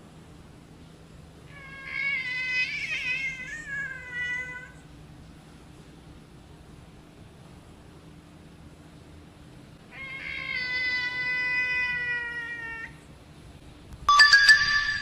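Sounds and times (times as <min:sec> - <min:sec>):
cat meowing: 0:01.5 - 0:04.8, 0:09.9 - 0:13.0
harsh cat cry: 0:01.5 - 0:04.8, 0:09.9 - 0:13.0.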